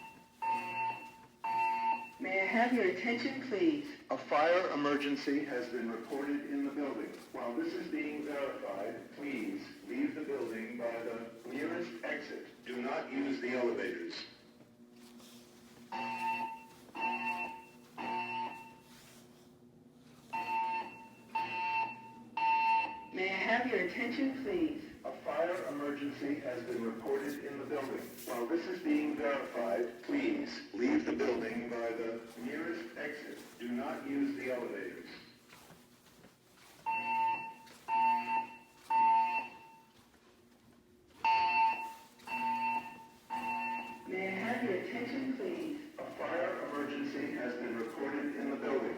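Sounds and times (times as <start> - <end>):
fire alarm short beeps: 0.0 - 2.4, 15.9 - 18.9, 20.3 - 23.2, 36.8 - 40.0, 41.2 - 44.7
fire alarm beeps: 0.0 - 12.3, 15.2 - 19.3, 20.2 - 29.9, 36.6 - 40.0, 41.1 - 48.9.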